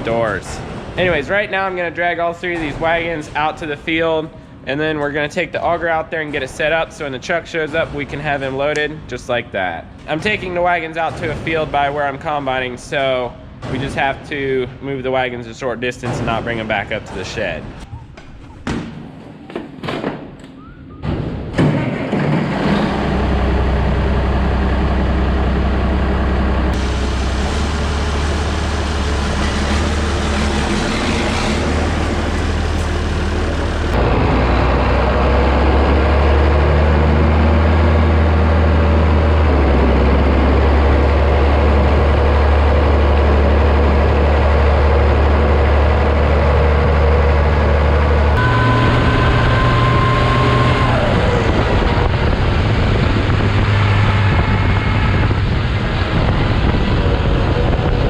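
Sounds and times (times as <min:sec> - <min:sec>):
tractor engine droning: 0:22.0 - 0:58.0.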